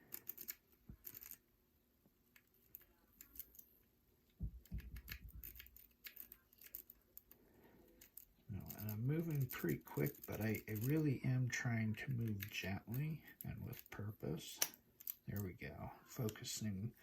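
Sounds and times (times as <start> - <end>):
lock pick clicking and scraping: 0.0 - 1.4, 4.6 - 11.0, 14.6 - 15.4.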